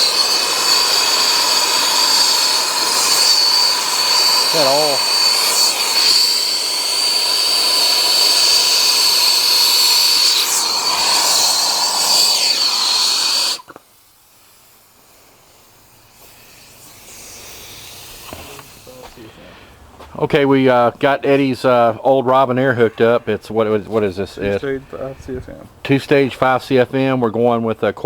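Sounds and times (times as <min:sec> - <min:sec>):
pressurized gas hissing with whistle: 0:00.0 - 0:19.2.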